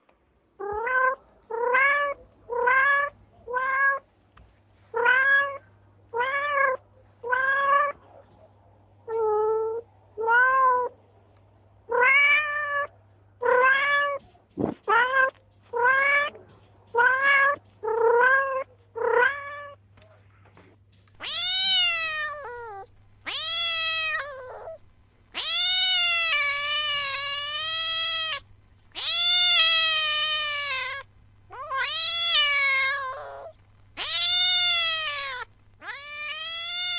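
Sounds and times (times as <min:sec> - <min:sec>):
cat meowing: 0:11.9 - 0:14.2, 0:14.9 - 0:19.8, 0:21.2 - 0:36.9.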